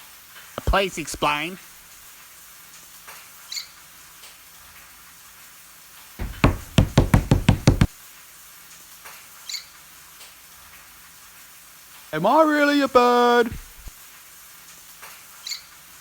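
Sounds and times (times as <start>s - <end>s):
rapid knocking: 6.2s - 7.9s.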